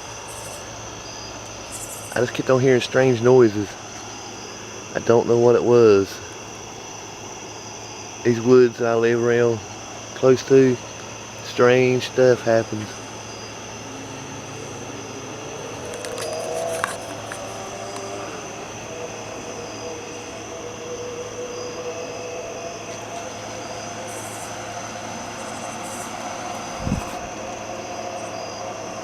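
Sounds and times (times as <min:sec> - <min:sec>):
distant mechanical hum: 0:00.0 - 0:29.0
high insect-like buzz: 0:00.0 - 0:29.0.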